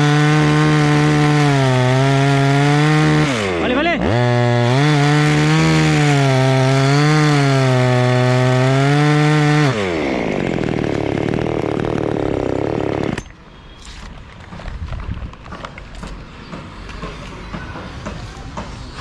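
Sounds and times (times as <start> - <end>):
chainsaw cutting wood: 0.0 - 14.1.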